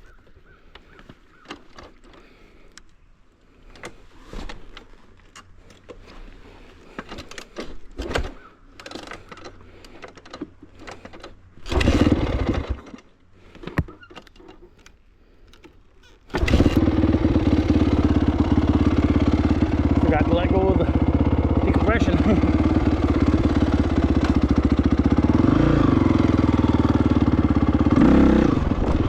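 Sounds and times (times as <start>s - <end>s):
clicks and knocks of handling: 0.7s - 3.0s, 6.8s - 11.4s
motorcycle engine running: 11.8s - 12.8s, 16.4s - 29.0s.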